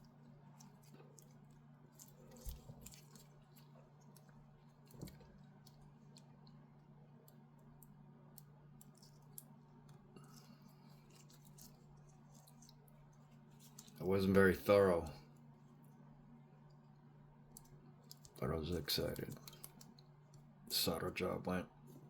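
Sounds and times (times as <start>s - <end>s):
low steady hum: 0.0s - 22.0s
small clicks of wire connectors: 17.5s - 18.4s.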